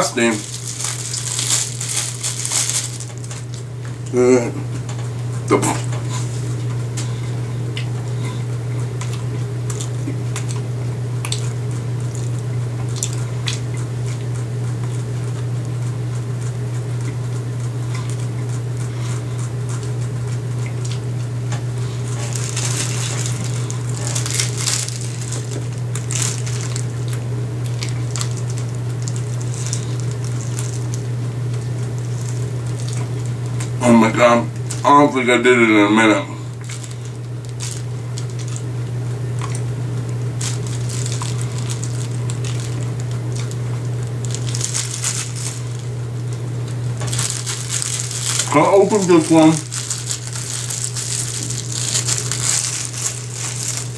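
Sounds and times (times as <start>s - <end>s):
plastic wrapper crinkling: 0.0s - 4.0s, 11.3s - 13.6s, 21.7s - 33.8s, 36.5s - 53.9s
steady low hum: 0.0s - 53.9s
wet squishy chewing: 0.4s - 33.8s, 36.5s - 48.6s, 49.4s - 53.9s.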